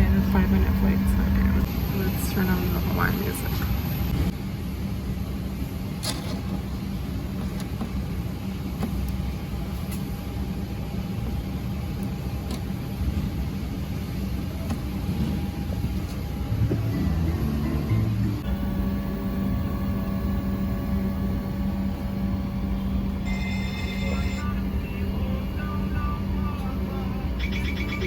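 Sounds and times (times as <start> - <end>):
vehicle rumble from inside cabin: 0.0 - 4.4, 14.4 - 28.0
faint steady hum: 0.0 - 28.0.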